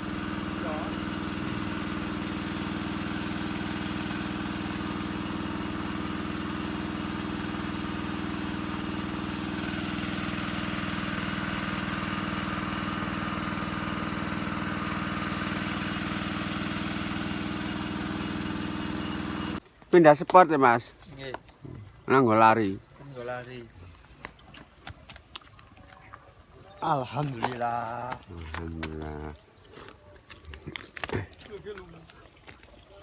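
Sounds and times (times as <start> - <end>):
small engine idling: 0.0 - 19.7.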